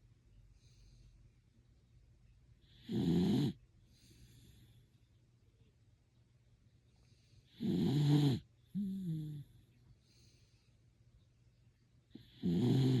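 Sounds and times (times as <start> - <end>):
dog snoring: 2.7 - 3.6, 7.5 - 9.5, 12.2 - 13.0.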